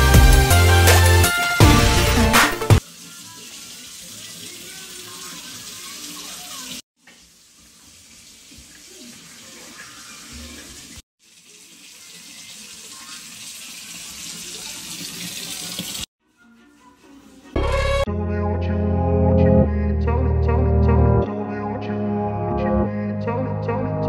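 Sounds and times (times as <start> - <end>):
running water: 1.7 - 16.1.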